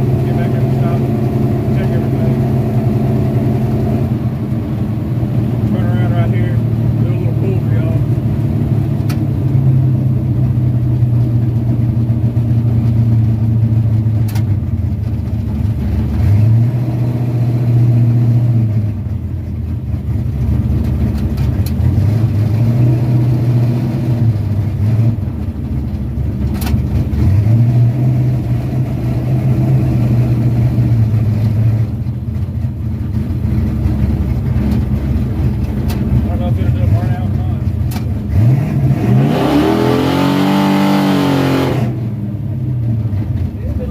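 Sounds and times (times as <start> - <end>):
car engine low drone: 0.0 - 43.9.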